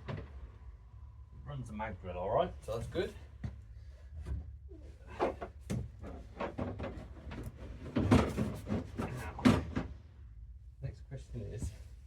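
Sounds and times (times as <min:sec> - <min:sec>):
objects knocking and clattering: 0:05.2 - 0:10.0.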